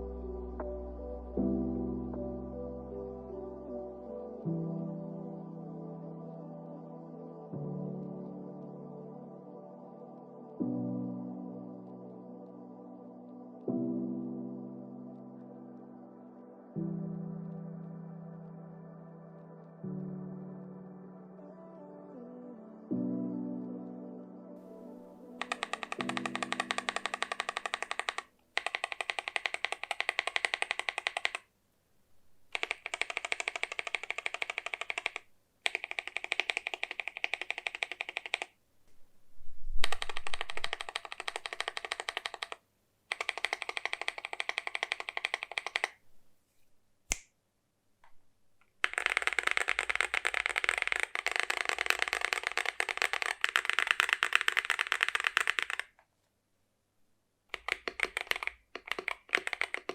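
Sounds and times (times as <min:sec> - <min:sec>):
mechanical keyboard typing: 0:25.4 - 0:31.5, 0:32.5 - 0:38.6, 0:39.8 - 0:46.0, 0:48.8 - 0:56.0, 0:57.5 - 0:59.9.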